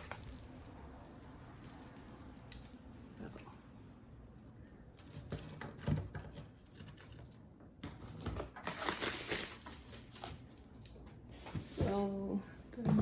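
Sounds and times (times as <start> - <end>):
metal bangles clinking: 0.0 - 5.4.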